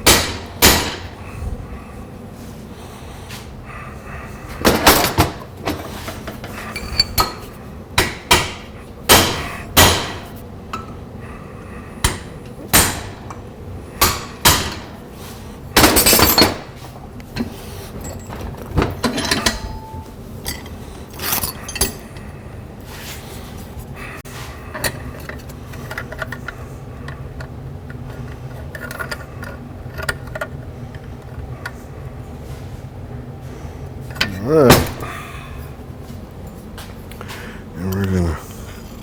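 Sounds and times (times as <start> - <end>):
hammer striking chisel on sheet steel: 0.0 - 1.2, 8.0 - 10.4, 12.0 - 13.3, 14.0 - 15.0.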